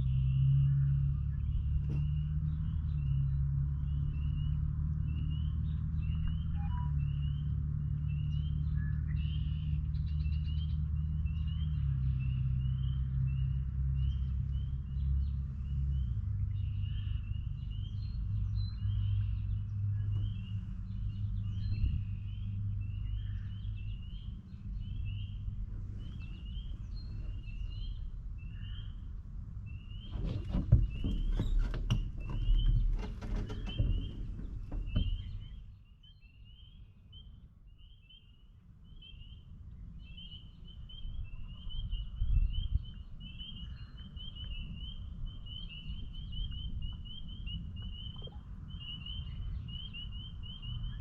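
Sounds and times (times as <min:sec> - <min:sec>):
rustling and knocks: 0:30.1 - 0:35.6.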